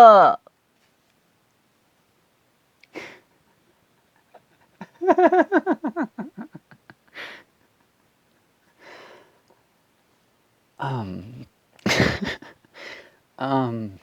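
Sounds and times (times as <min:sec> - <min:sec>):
person laughing: 0:03.0 - 0:03.3, 0:04.0 - 0:07.9, 0:11.8 - 0:12.7.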